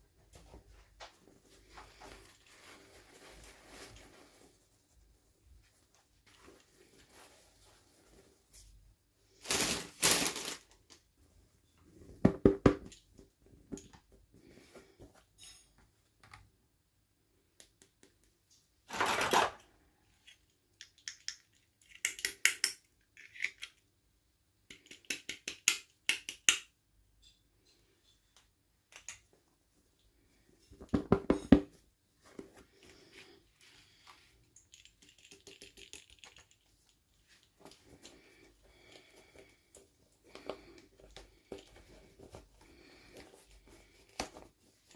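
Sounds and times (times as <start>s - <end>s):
plastic toys clicking and rattling: 20.2s - 23.9s, 34.4s - 37.0s.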